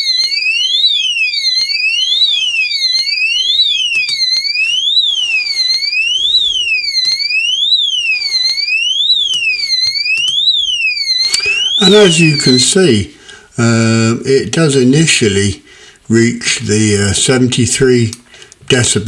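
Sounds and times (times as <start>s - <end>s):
alarm siren sweeping up and down: 0.0s - 12.9s.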